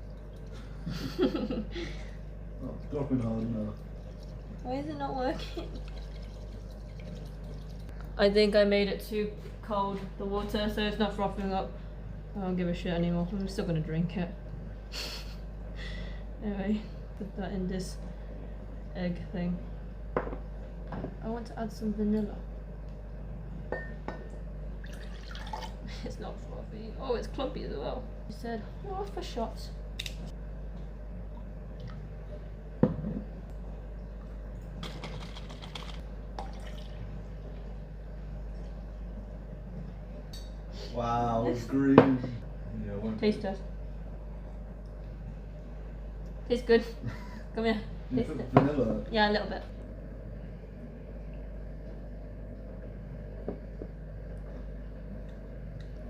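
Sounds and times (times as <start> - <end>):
low steady hum: 0.0 - 56.0.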